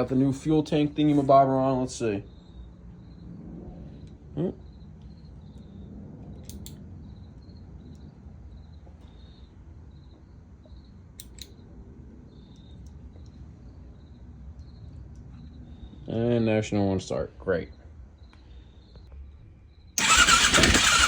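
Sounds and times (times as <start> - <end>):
steady low hum: 0.0 - 16.4.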